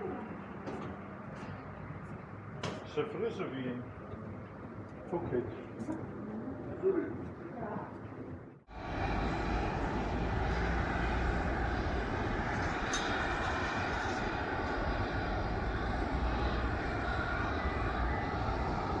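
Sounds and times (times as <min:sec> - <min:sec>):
jet engines running: 0:08.7 - 0:19.0.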